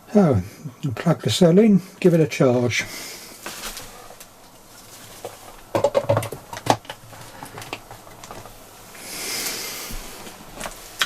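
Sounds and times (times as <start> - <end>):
plastic clicks and knocks: 5.7 - 8.3.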